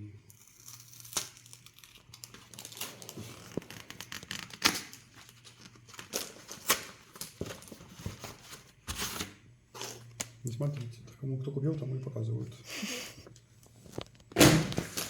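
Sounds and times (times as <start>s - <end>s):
packaging being torn open: 0.3s - 7.7s.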